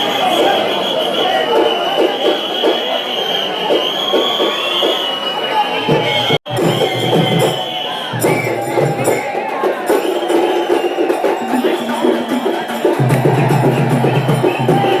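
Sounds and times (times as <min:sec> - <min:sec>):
fast clattering percussion: 0:05.9 - 0:15.0.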